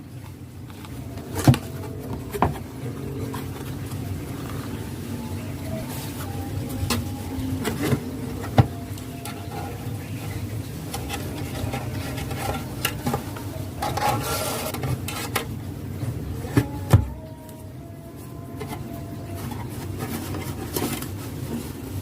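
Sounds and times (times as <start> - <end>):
steady low hum: 0.0 - 22.0
rubbing sound: 13.8 - 15.5.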